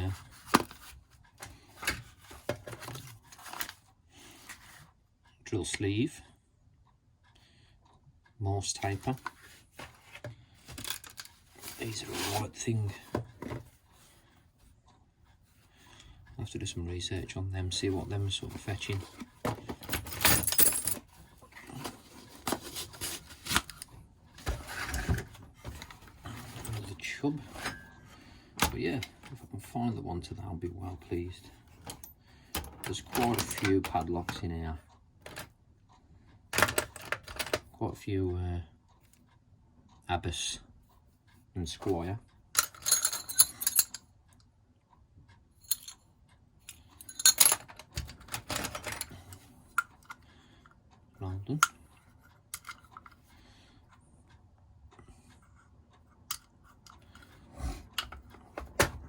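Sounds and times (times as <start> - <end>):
tools clicking and knocking: 0.0 - 3.8, 8.9 - 12.4, 18.0 - 26.9, 27.5 - 29.4, 31.7 - 34.4, 35.2 - 35.5, 36.5 - 37.7, 42.6 - 44.1, 45.6 - 46.0, 46.7 - 50.2, 51.6 - 53.2, 56.2 - 59.0
rustling through a box: 0.0 - 4.8, 8.8 - 14.2, 17.7 - 29.4
padlocks and keys clinking: 18.5 - 21.1, 42.6 - 44.0, 46.7 - 49.4.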